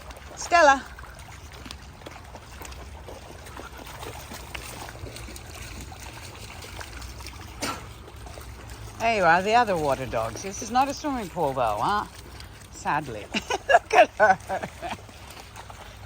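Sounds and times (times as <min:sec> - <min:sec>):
river trickling over stones: 0:00.0 - 0:16.0
knock or splash: 0:07.5 - 0:08.0.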